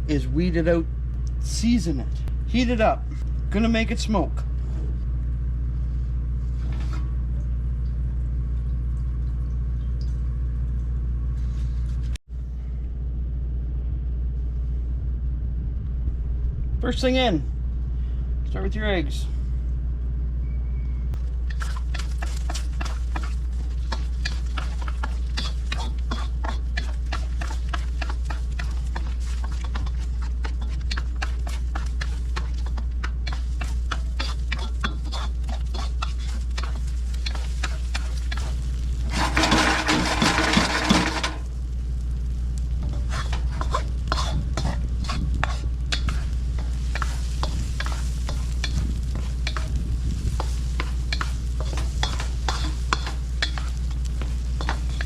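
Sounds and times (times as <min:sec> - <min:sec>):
steady low hum: 0:00.0 - 0:55.0
eggs frying in oil: 0:21.2 - 0:55.0
utensil scraping a pan: 0:21.5 - 0:41.5, 0:42.8 - 0:55.0.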